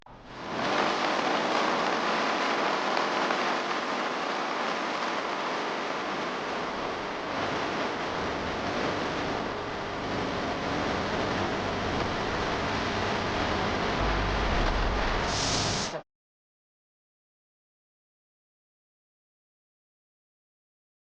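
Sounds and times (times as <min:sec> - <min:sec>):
computer cooling fans whooshing: 0:00.1 - 0:16.0.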